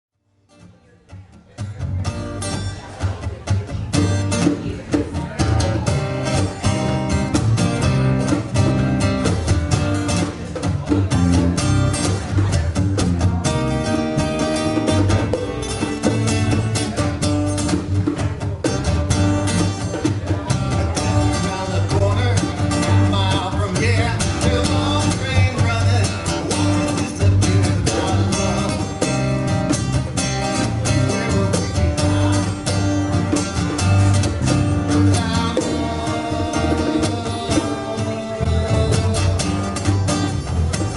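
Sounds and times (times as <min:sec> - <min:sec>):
guitar music with steady beat: 0:00.3 - 0:40.9
live band playing: 0:00.6 - 0:40.9
person singing: 0:19.9 - 0:29.7, 0:30.4 - 0:33.4, 0:34.4 - 0:40.6.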